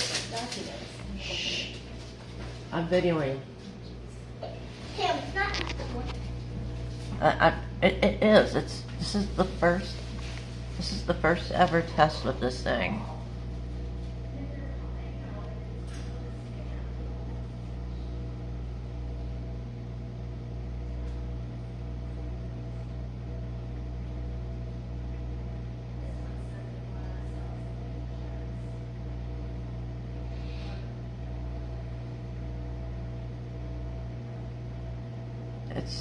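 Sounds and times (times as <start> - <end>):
dishwasher drain pump humming: 0.0 - 36.0.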